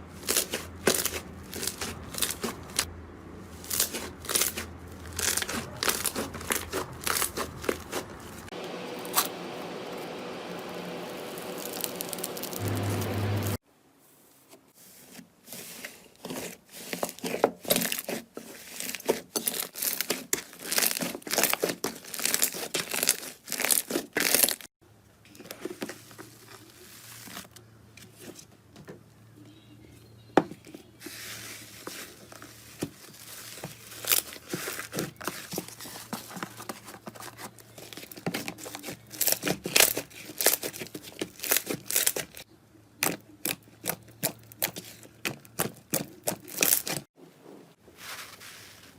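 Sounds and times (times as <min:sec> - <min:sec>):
slime crackling and popping: 0:00.2 - 0:02.9, 0:03.6 - 0:08.4, 0:11.1 - 0:12.9, 0:18.8 - 0:24.7, 0:37.7 - 0:42.4, 0:43.0 - 0:47.0
low hum: 0:08.5 - 0:13.6.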